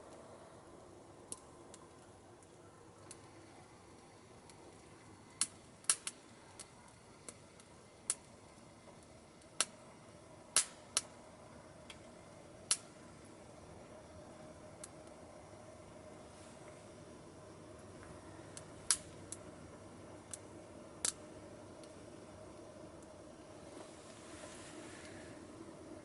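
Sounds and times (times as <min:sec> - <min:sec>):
faint steady hiss: 0:00.0 - 0:26.0
wood fire popping and cracking: 0:00.8 - 0:13.9, 0:14.6 - 0:15.3, 0:17.7 - 0:23.6.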